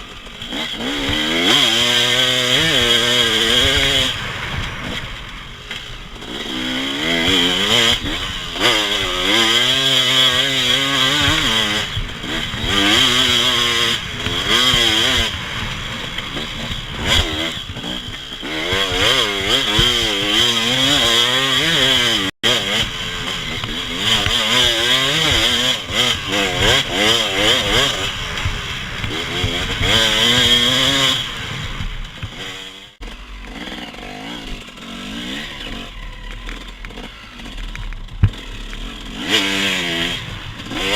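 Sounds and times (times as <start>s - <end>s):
off-road vehicle engine revving: 0.0s - 40.9s.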